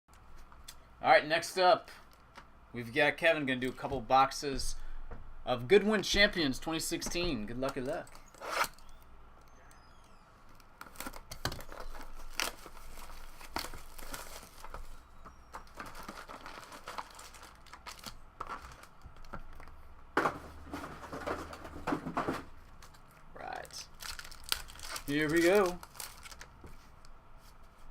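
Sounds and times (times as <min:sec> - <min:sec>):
plastic packaging crinkling and tearing: 0:10.8 - 0:19.7, 0:22.8 - 0:27.1.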